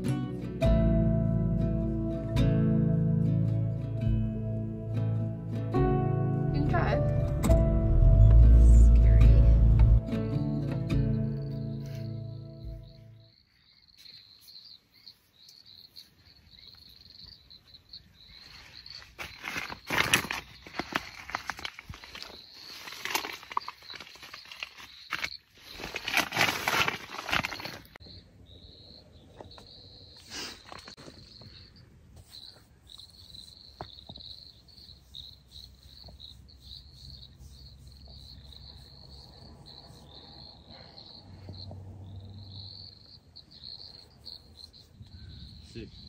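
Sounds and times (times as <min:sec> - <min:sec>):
crickets chirping: 0:07.8 - 0:46.0
rustling and scuffing: 0:18.3 - 0:28.0.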